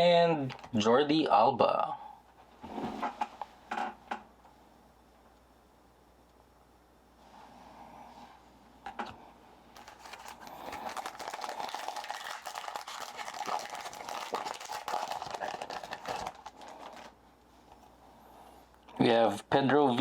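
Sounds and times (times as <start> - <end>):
foil wrapper crinkling and tearing: 9.8 - 17.2.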